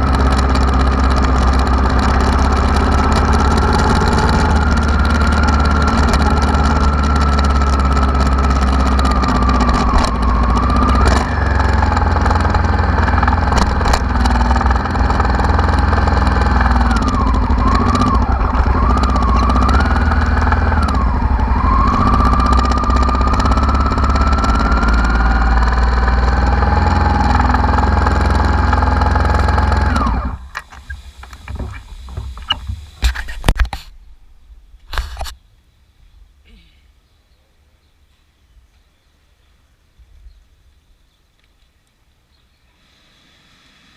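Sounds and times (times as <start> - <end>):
motorcycle engine running: 0.0 - 33.5.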